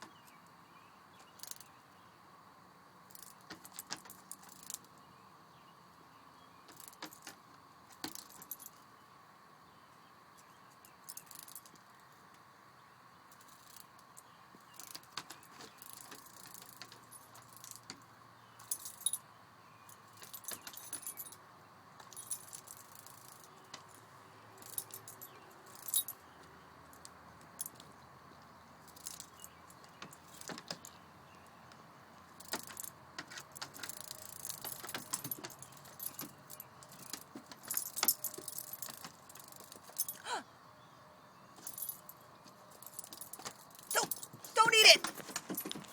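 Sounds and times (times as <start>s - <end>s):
metal collar tags jingling: 6.7s - 8.9s, 10.4s - 11.9s, 13.3s - 21.4s, 22.0s - 31.6s, 32.2s - 40.4s, 41.5s - 45.9s.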